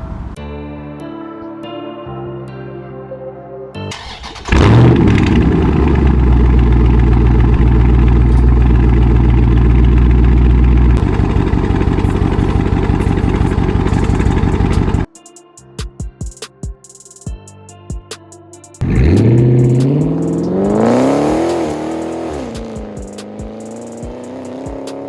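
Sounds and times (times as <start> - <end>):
car engine running loud: 4.4 - 15.1, 18.8 - 25.0.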